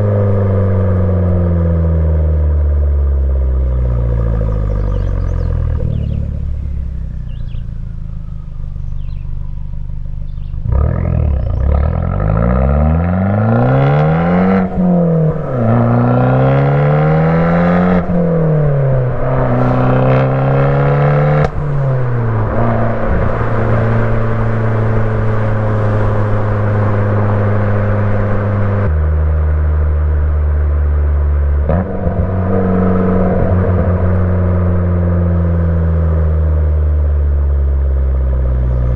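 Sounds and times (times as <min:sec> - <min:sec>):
car engine accelerating through upshifts: 0:10.3 - 0:29.6, 0:31.3 - 0:38.9.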